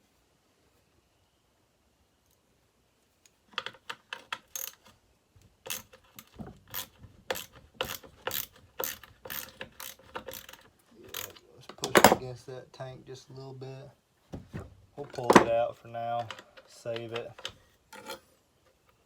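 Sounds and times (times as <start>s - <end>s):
ratchet wrench clicking: 4.4s - 4.8s, 5.7s - 11.4s.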